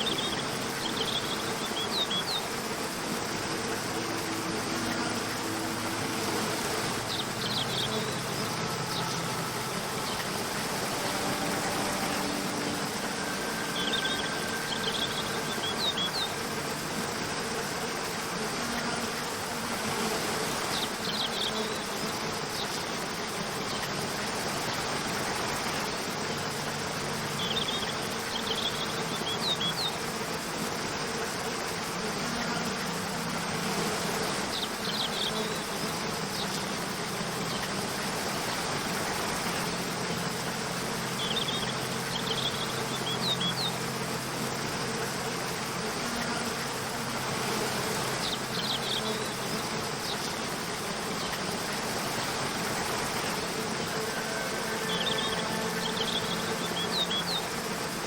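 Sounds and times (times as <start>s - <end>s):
rush of falling water: 0.0s - 58.0s
soft background music: 0.0s - 58.0s
high chirps: 4.0s - 16.6s, 53.9s - 57.6s.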